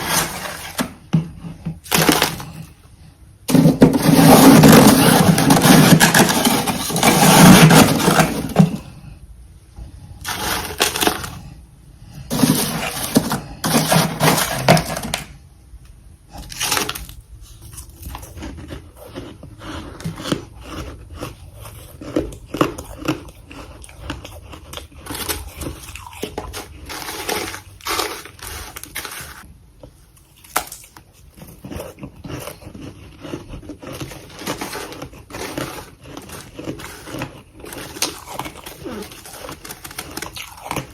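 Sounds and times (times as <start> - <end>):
chewing crunchy frost: 16.3 - 40.9.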